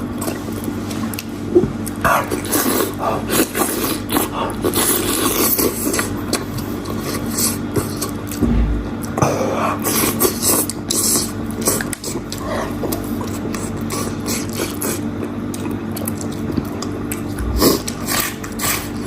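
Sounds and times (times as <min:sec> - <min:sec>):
steady low hum: 0:06.6 - 0:10.4, 0:16.6 - 0:19.0
dull low thump: 0:08.4 - 0:09.1
wet chewing and smacking: 0:10.1 - 0:19.0.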